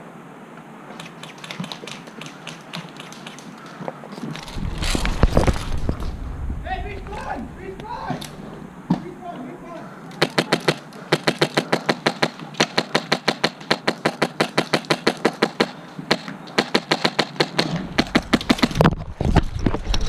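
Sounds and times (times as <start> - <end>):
low rumble: 4.3 - 9.7, 17.8 - 20.0
airsoft gun rapid shots: 10.2 - 18.8.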